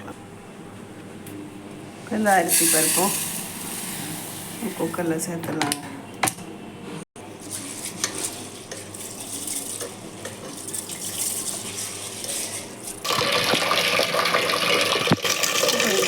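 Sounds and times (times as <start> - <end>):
water pouring into vessel: 13.0 - 16.0.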